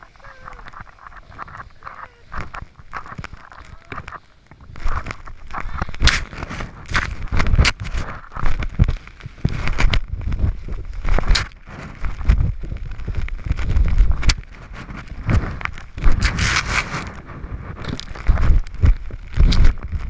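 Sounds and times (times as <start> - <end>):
hissing scrape: 0.0 - 8.4
wind buffeting microphone: 0.0 - 20.0.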